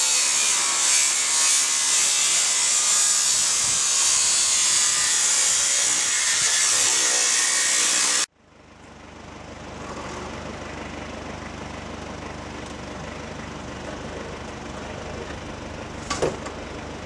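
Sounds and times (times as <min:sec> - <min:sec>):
power tool cutting sheet metal: 0:00.0 - 0:08.3.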